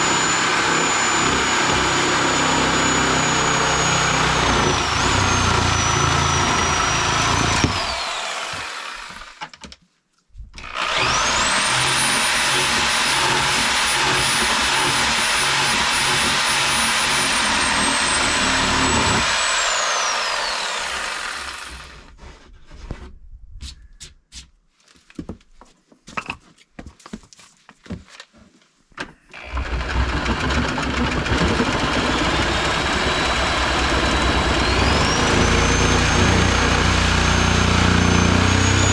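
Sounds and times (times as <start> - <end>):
angle grinder cutting steel: 0.0 - 9.4, 10.6 - 22.1, 29.4 - 38.9.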